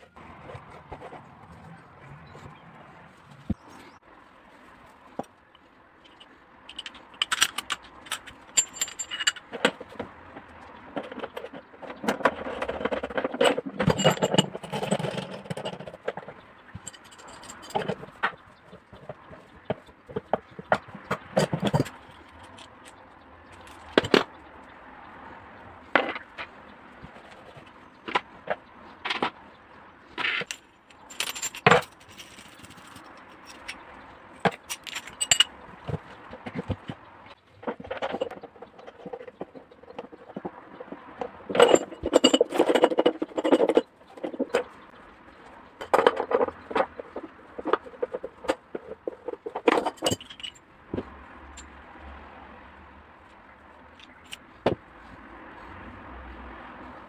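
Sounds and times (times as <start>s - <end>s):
metal parts clinking and scraping: 6.0s - 24.4s, 30.1s - 37.0s, 37.6s - 44.8s, 45.7s - 51.7s.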